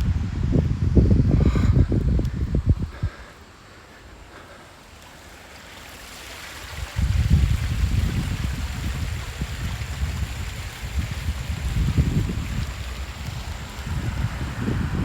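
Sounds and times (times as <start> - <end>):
wind buffeting microphone: 0.0 - 4.5, 6.2 - 15.0
waterfall rushing over rock: 4.3 - 15.0.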